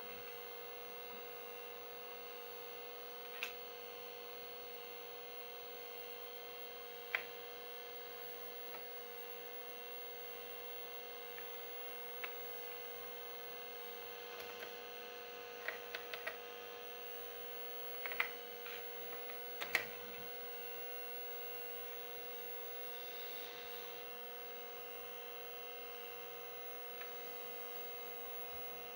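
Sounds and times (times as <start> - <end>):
computer electrical hum and whine: 0.0 - 28.9
hard disk clicks: 15.5 - 16.6, 18.0 - 20.3.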